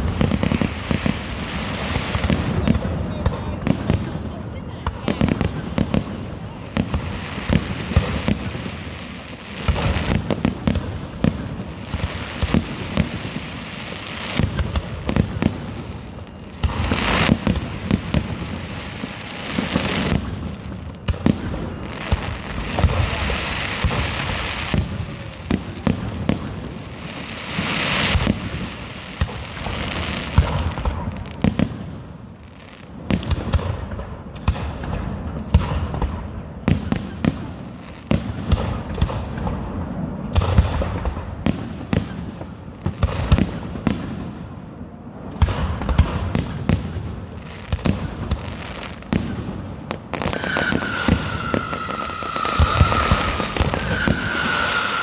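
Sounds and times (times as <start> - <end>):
fireworks hiss: 0.0 - 16.0, 16.6 - 31.8, 50.1 - 55.0
fireworks bangs and crackles: 0.0 - 55.0
falling whistle: 50.4 - 55.0.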